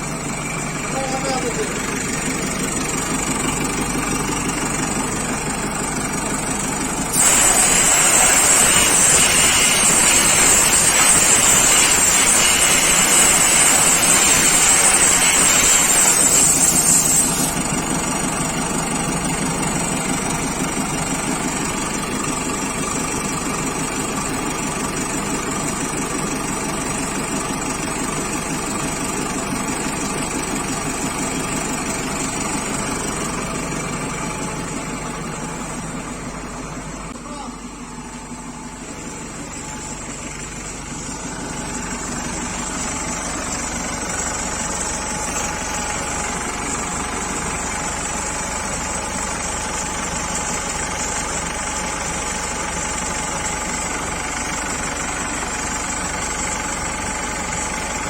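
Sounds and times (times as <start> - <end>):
diesel engine idling: 0.0 - 58.0
loud hiss: 7.1 - 17.7.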